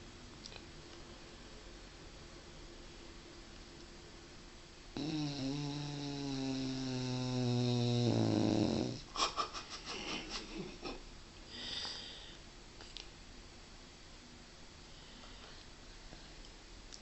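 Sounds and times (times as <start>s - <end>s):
dog snoring: 4.9s - 9.1s
soft hissing breath: 11.4s - 12.5s, 14.8s - 16.5s.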